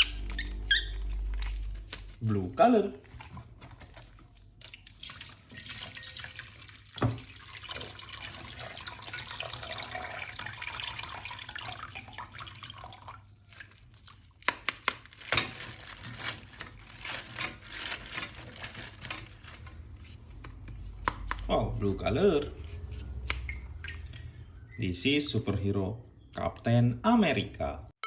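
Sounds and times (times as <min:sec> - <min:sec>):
tap water running and splashing: 0:03.2 - 0:14.7.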